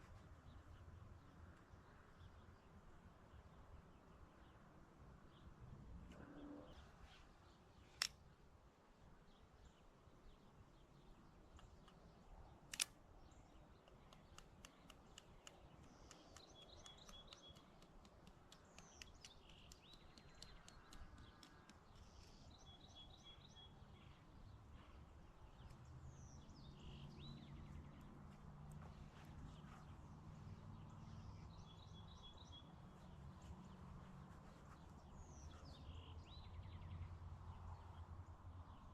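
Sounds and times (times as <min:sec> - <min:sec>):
bird calls and trills: 0:05.3 - 0:08.1, 0:09.3 - 0:38.9
light ticks: 0:08.0 - 0:08.2, 0:11.5 - 0:12.1, 0:12.7 - 0:13.0, 0:13.7 - 0:22.6
sharp clicks: 0:11.4 - 0:22.5.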